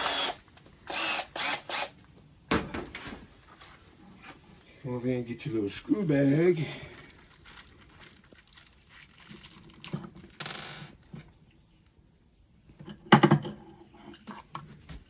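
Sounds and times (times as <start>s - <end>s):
plastic bag crinkling: 6.0s - 11.2s.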